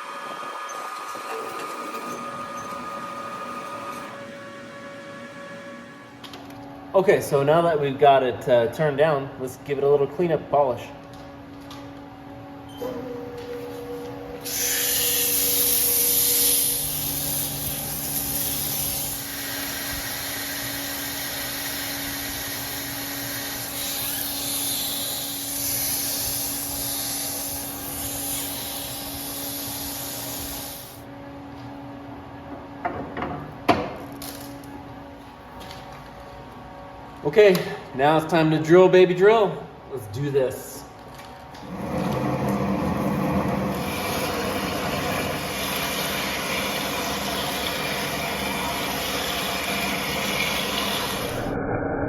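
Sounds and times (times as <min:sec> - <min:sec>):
lathe humming: 0:00.0 - 0:06.3, 0:41.7 - 0:51.6
abrasive hissing on metal: 0:14.4 - 0:31.0.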